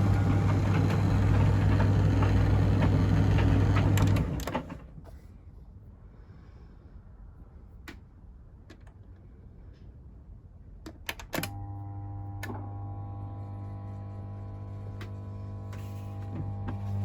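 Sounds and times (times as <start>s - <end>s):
motor electrical hum: 0.0s - 4.7s, 11.4s - 17.0s.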